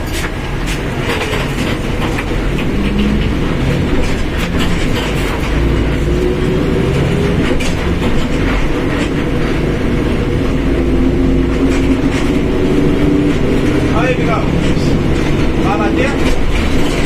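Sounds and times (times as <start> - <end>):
body rattles and clicks: 0.0 - 17.0
bus drivetrain rumble with whine: 0.0 - 17.0.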